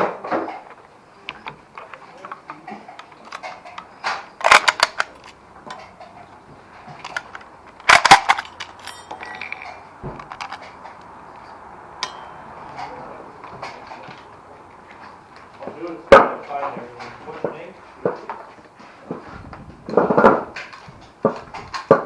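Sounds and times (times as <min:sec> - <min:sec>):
rifle bolts clicking: 0:01.4 - 0:06.2, 0:07.0 - 0:11.1.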